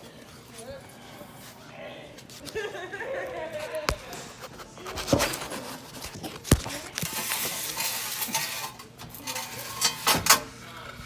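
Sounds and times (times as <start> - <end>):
handling knocks: 3.8 - 7.0.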